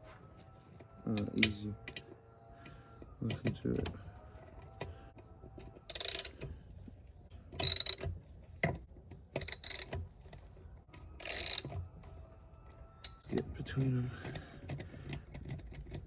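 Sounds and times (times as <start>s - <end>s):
ratchet wrench clicking: 5.9s - 6.4s, 7.6s - 8.1s, 9.4s - 10.0s, 11.2s - 11.8s.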